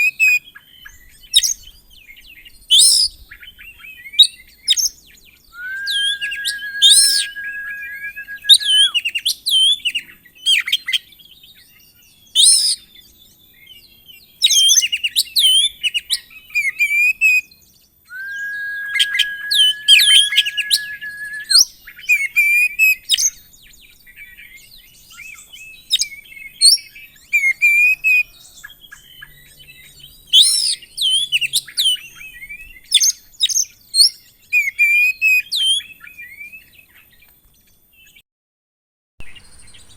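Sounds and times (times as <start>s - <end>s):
bird singing varied song: 0.4s - 10.4s, 17.4s - 21.8s, 39.2s - 39.9s
long whistled bird notes: 5.6s - 9.0s, 18.1s - 21.7s.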